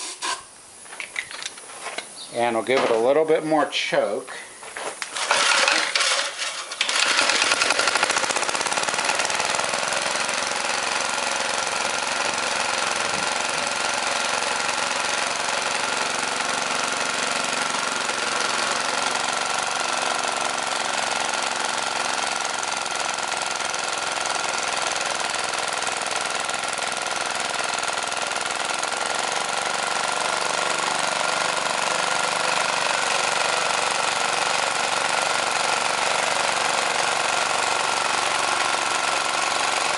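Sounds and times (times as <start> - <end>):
small engine starting and running: 5.0 - 39.9.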